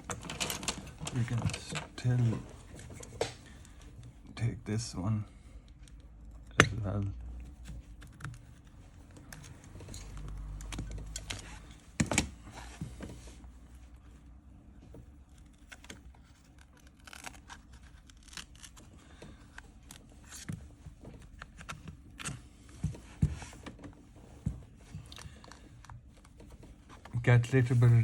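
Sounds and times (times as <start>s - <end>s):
adhesive tearing: 15.3s - 20.4s.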